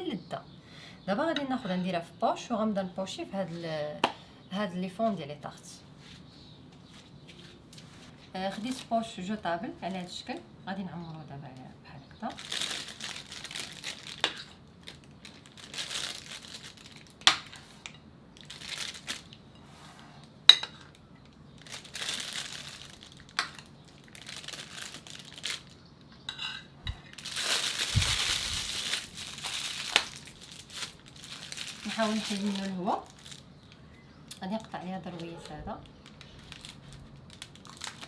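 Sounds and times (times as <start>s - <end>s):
plastic bag crinkling: 8.5s - 8.9s, 12.3s - 17.7s, 18.4s - 19.4s, 20.8s - 25.9s, 26.9s - 33.8s, 34.6s - 38.0s.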